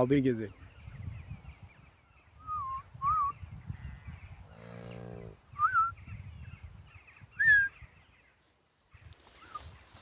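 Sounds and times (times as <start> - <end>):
faint bird chatter: 0.0 - 10.0
whistled bird calls: 1.5 - 3.6, 5.5 - 8.1
low livestock call: 4.5 - 5.4.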